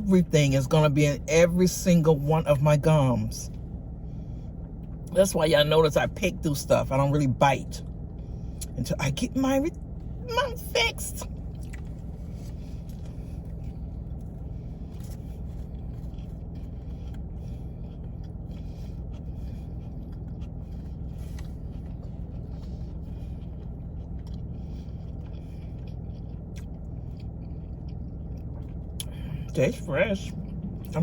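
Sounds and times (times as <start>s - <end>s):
car engine idling: 0.0s - 31.0s
person chewing: 11.3s - 31.0s.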